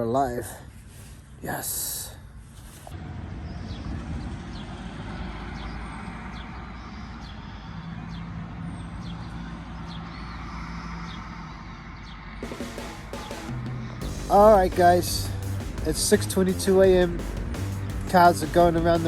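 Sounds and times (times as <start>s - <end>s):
rumble of cars: 2.6s - 12.5s
vehicle engine revving: 12.4s - 19.0s.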